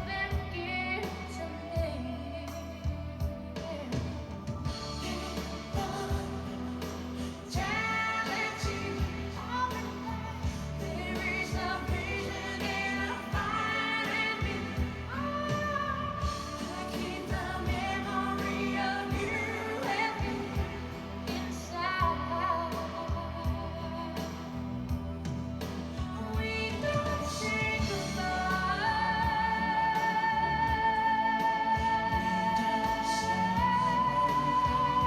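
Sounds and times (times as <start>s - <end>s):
person singing: 4.7s - 24.6s, 26.1s - 35.0s.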